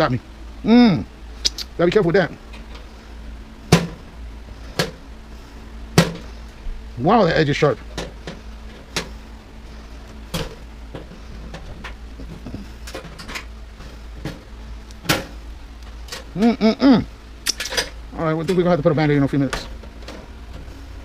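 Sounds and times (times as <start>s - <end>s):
tools and metal parts clicking: 17.4s - 18.7s.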